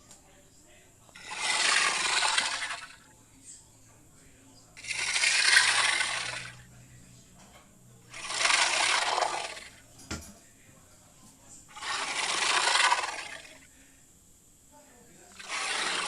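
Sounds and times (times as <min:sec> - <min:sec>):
hissing dragon roars: 0:01.2 - 0:02.9, 0:08.2 - 0:09.7, 0:11.8 - 0:13.6, 0:15.4 - 0:16.0.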